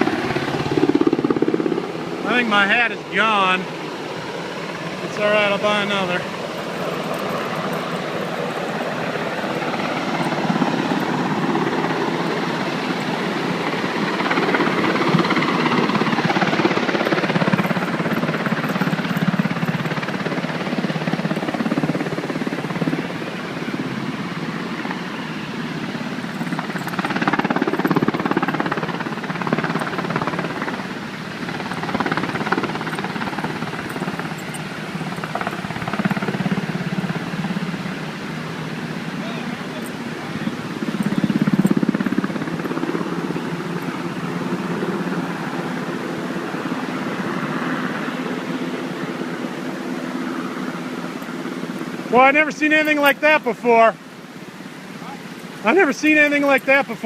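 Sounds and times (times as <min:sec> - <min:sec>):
helicopter hovering overhead: 0:00.0 - 0:57.0
wind buffeting microphone: 0:03.4 - 0:38.0, 0:39.6 - 0:45.5.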